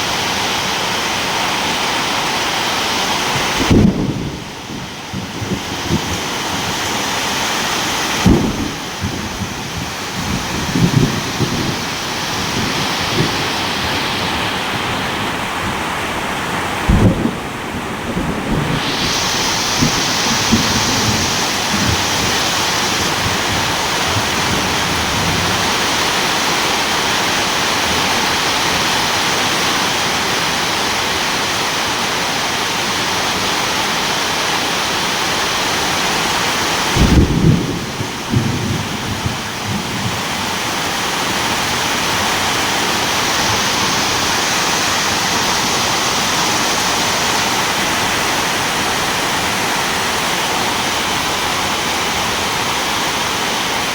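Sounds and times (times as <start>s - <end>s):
heavy rain hissing: 0.0s - 53.9s
thunder rumbling: 2.8s - 29.0s, 35.8s - 52.5s.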